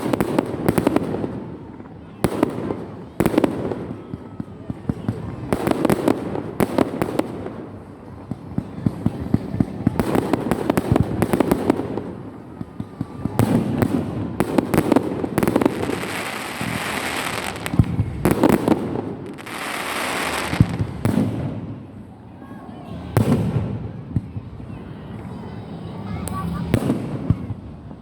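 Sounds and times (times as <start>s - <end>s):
fireworks bangs: 0.0s - 22.0s, 23.0s - 24.6s, 26.5s - 28.0s
fireworks hissing crackle: 13.4s - 21.4s.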